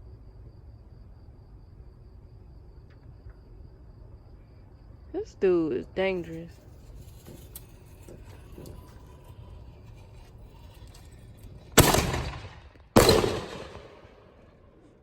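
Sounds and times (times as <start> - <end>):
fireworks explosions: 9.7 - 15.0.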